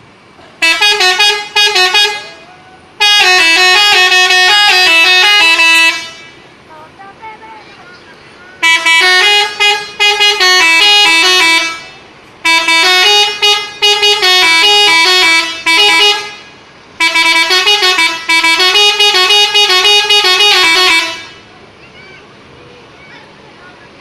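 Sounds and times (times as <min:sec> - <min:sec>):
musical bus air horn: 0:00.6 - 0:06.5, 0:08.6 - 0:21.5.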